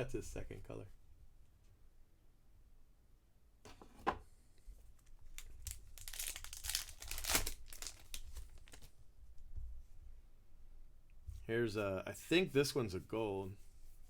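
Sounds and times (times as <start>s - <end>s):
card pack wrapper crinkling: 5.0s - 9.0s.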